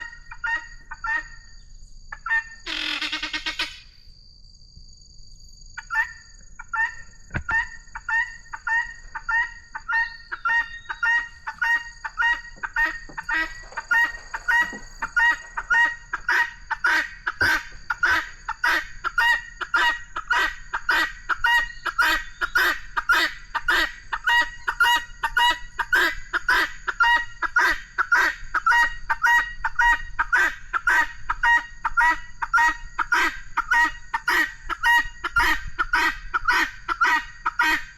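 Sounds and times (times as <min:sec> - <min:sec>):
bird harsh calls: 0:02.3 - 0:03.8, 0:06.8 - 0:24.7.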